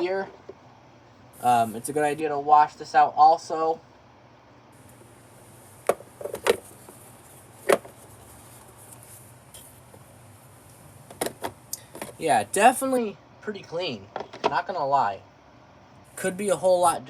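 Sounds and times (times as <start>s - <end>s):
plastic clicks and knocks: 14.1s - 14.6s.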